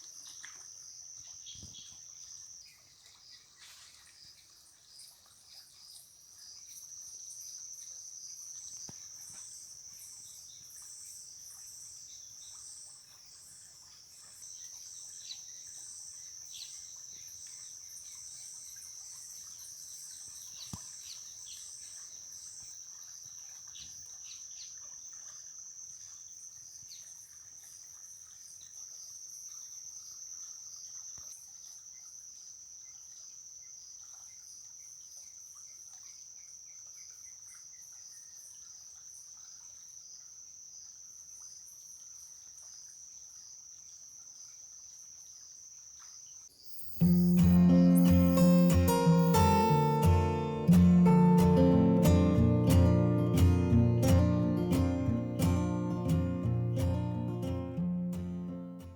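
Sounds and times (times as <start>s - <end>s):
high-pitched insect trill: 39.9s - 52.2s
insect calling in pulses: 46.6s - 50.5s
short faint calls: 46.7s - 57.8s.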